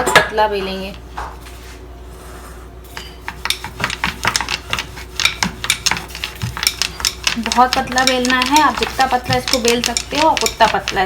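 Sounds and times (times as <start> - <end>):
rolling pin clicking on board: 3.2 - 11.0.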